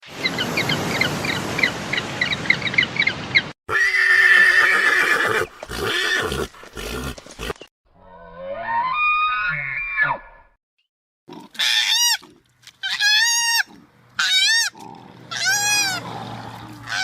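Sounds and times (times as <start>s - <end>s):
horse whinnying: 3.7s - 10.4s, 12.9s - 16.1s.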